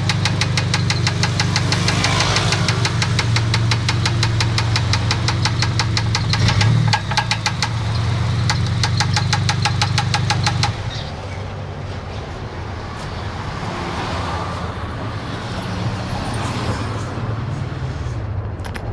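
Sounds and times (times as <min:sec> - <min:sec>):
fast ticking engine knock: 0:00.0 - 0:11.2
car engine running: 0:00.0 - 0:13.4.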